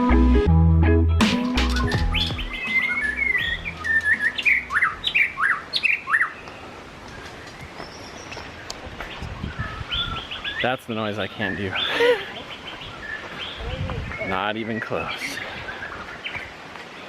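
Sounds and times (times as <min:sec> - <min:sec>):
background music: 0:00.0 - 0:05.3
bird singing: 0:01.6 - 0:17.0.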